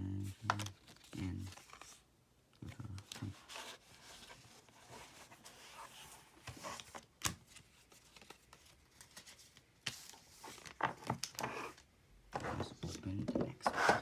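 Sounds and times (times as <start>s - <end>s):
card packaging rustling: 0.3s - 2.0s, 2.7s - 11.8s.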